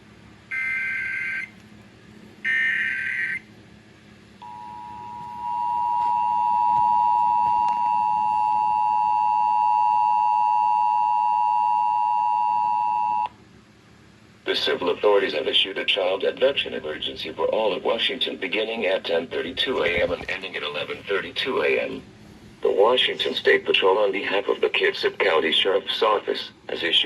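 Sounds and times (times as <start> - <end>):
two-tone attention signal: 4.4 - 13.3.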